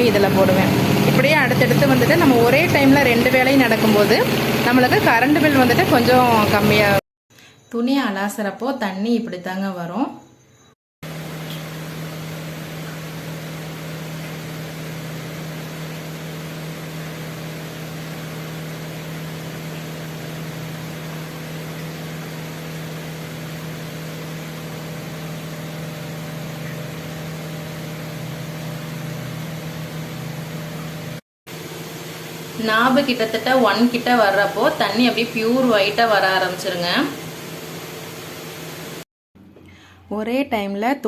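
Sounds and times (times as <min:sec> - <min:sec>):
washing machine motor hum: 0:00.0 - 0:07.0, 0:11.0 - 0:39.6
water rushing in spin tub: 0:00.0 - 0:07.0, 0:11.0 - 0:39.0
tap water flowing: 0:11.3 - 0:11.9, 0:12.5 - 0:16.2, 0:18.2 - 0:23.4, 0:24.7 - 0:28.4.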